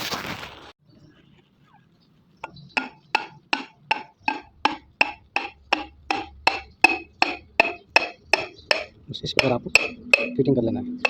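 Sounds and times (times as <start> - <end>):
metallic tapping on piston: 2.4 - 11.0.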